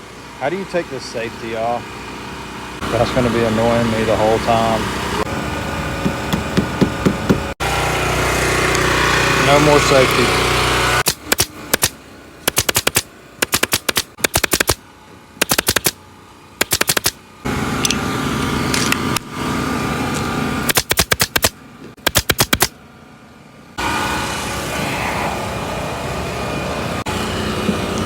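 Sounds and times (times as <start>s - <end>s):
steady motor hum: 0.0s - 28.0s
staple gun firing: 11.0s - 14.8s, 15.4s - 16.0s, 16.6s - 17.2s, 20.7s - 22.7s.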